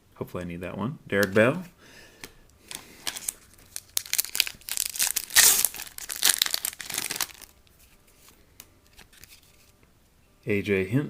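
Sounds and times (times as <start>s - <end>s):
foil wrapper crinkling and tearing: 2.7s - 7.6s.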